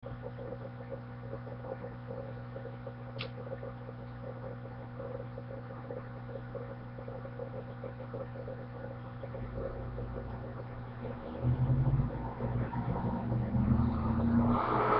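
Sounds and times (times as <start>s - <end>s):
low electrical hum: 0.0s - 14.9s.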